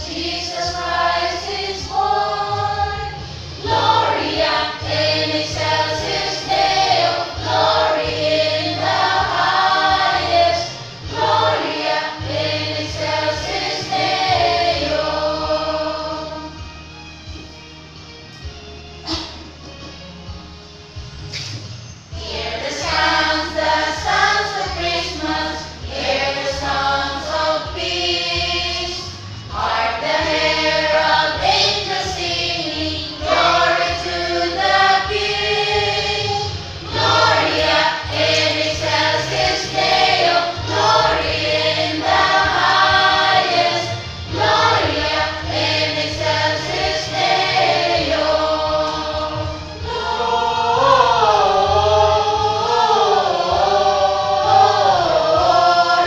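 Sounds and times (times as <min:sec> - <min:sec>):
choir singing: 0:00.0 - 0:16.7, 0:22.1 - 0:56.0.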